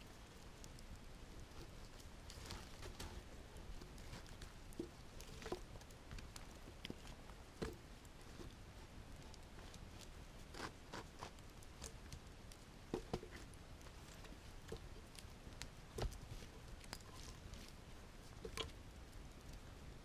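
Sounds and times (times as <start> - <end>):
crackles and snaps: 0.0 - 20.0.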